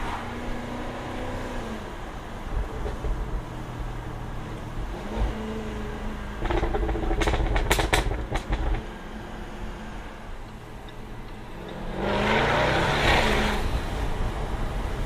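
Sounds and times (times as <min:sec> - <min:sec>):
car engine revving: 0:04.8 - 0:14.5
exhaust pops and crackles: 0:06.4 - 0:08.9.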